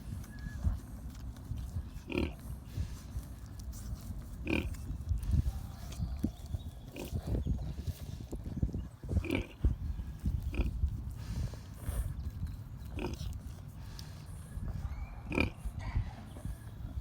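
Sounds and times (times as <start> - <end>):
piglets grunting: 1.9 - 2.9, 4.4 - 5.5, 9.0 - 14.0, 15.2 - 15.8.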